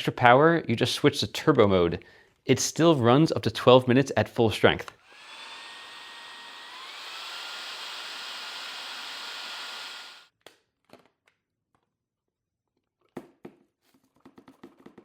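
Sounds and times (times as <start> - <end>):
vacuum motor whining: 5.0 - 10.3.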